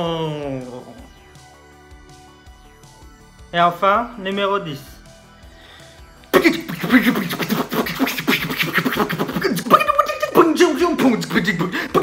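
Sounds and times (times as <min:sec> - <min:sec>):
man beatboxing: 0:06.3 - 0:12.0.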